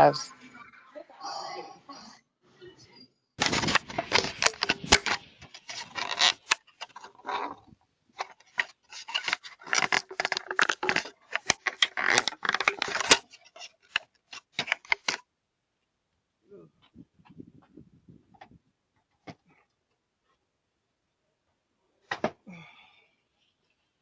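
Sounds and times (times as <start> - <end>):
rapid clicks scrapes and rattles: 3.4 - 15.2.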